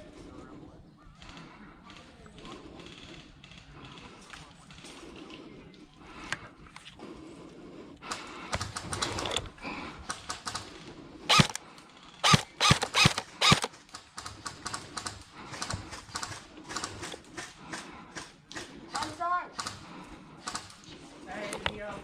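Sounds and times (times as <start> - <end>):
rapid clicking and rattling: 8.1 - 20.8
airsoft gun shots: 11.3 - 11.6, 12.2 - 13.7.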